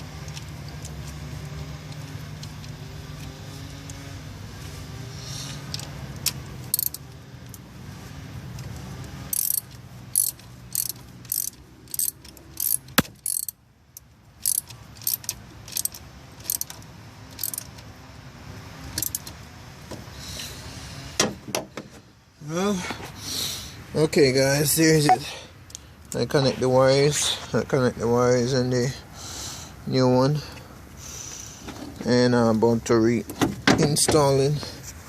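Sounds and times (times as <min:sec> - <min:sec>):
socket ratchet clicking: 0:05.7 - 0:07.0, 0:09.3 - 0:13.6, 0:14.4 - 0:17.8, 0:18.9 - 0:19.3.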